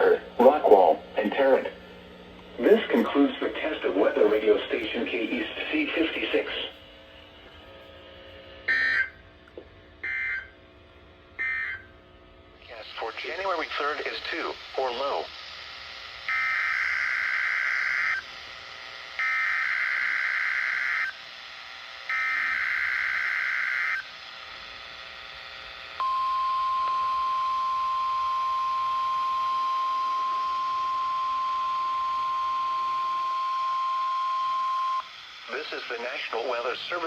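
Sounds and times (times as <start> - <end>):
steady warning alarm tone: 2.6 - 7.6, 8.6 - 9.2, 10.0 - 10.6, 11.4 - 11.9, 16.2 - 18.3, 19.2 - 21.2, 22.1 - 24.1, 26.0 - 35.5.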